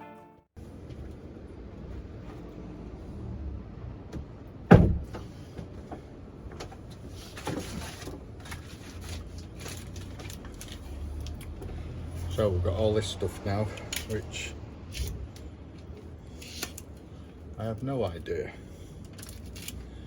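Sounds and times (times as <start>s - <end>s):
loud thump: 4.7s - 5.3s.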